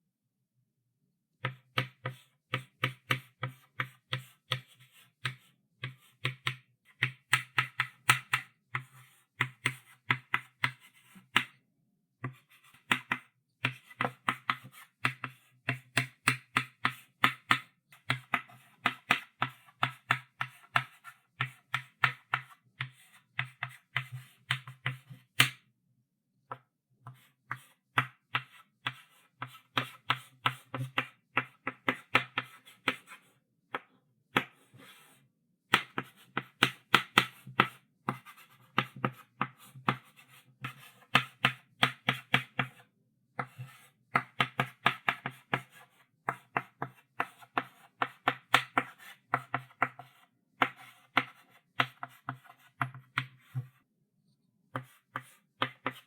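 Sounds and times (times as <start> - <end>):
chalk writing on blackboard: 12.2 - 25.2, 27.1 - 33.3, 34.4 - 42.8, 43.4 - 53.8, 54.7 - 56.0.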